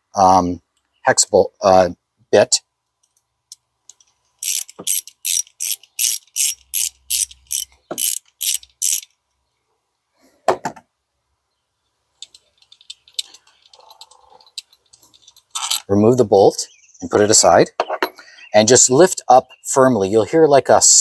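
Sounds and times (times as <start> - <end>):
ratchet wrench clicking: 3.9 - 9.1.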